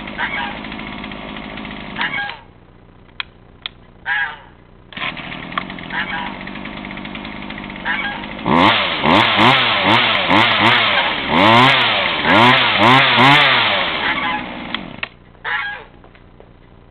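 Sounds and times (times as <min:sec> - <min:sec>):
chainsaw engine revving: 0:00.0 - 0:02.4, 0:05.0 - 0:15.1.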